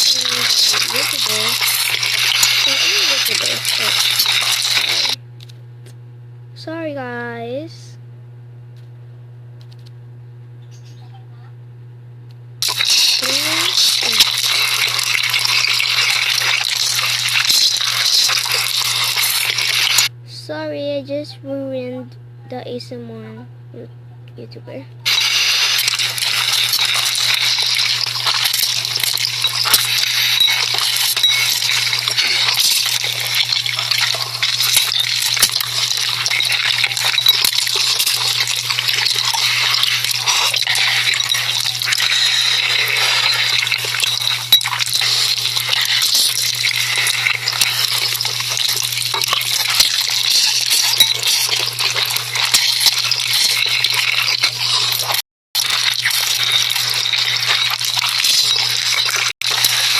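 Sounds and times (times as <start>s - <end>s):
noodles slurped and chewed: 0.0s - 5.2s, 12.6s - 20.1s, 25.1s - 59.9s.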